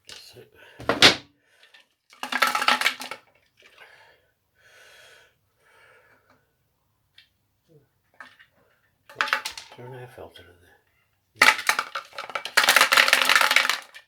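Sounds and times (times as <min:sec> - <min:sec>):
scraping and rustling of parts: 0:00.8 - 0:01.2
tools clattering on a workbench: 0:00.8 - 0:01.2.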